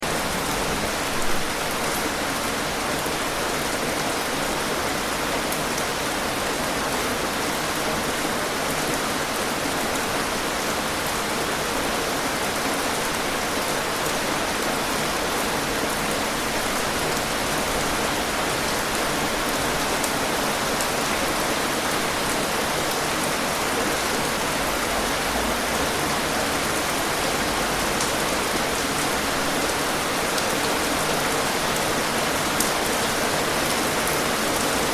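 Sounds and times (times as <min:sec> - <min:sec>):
steady rain falling: 0:00.0 - 0:34.9.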